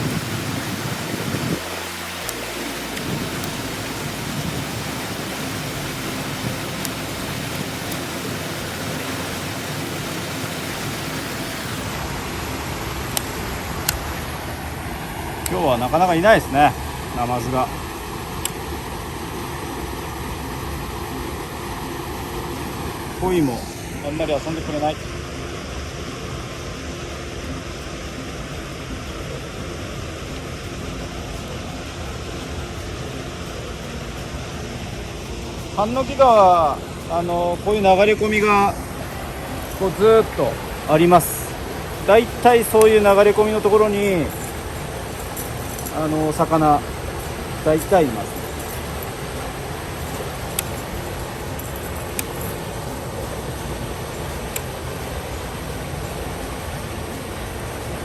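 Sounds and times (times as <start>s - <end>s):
river water rushing: 0.0s - 58.0s.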